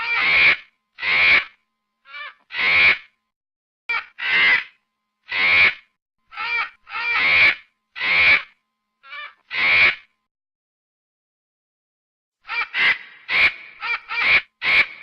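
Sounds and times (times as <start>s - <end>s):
monkey giving harsh calls: 0.0s - 1.5s, 2.1s - 3.1s, 3.9s - 10.1s, 12.5s - 15.0s.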